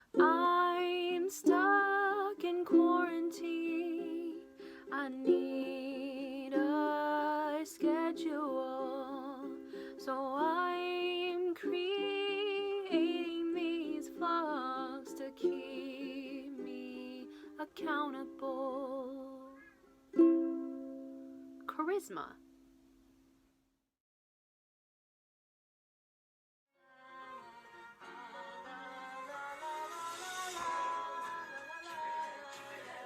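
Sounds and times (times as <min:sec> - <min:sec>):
strummed string accompaniment: 0:00.0 - 0:08.7, 0:20.1 - 0:21.9, 0:27.0 - 0:33.0
woman singing: 0:00.1 - 0:19.6, 0:26.8 - 0:33.0.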